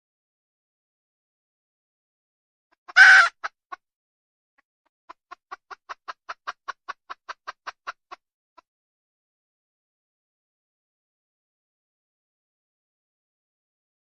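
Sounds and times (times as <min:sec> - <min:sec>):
hen clucking: 0:02.8 - 0:03.8, 0:05.1 - 0:08.2
hen squawk: 0:02.9 - 0:03.6.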